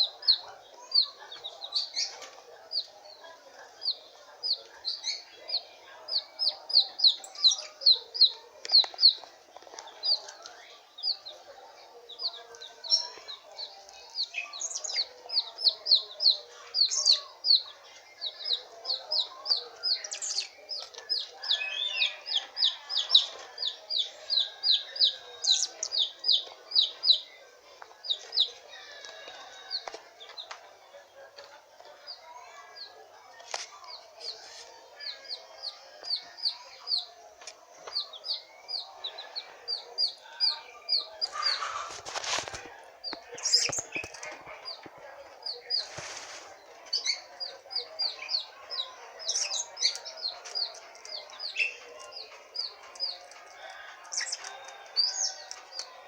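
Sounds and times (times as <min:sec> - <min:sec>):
rustling: 0:41.6 - 0:42.8, 0:45.8 - 0:46.6.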